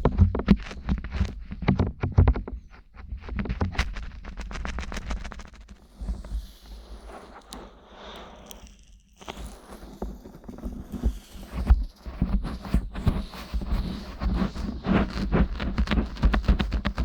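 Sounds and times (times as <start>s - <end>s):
fingers rubbing on microphone: 0.0s - 17.0s.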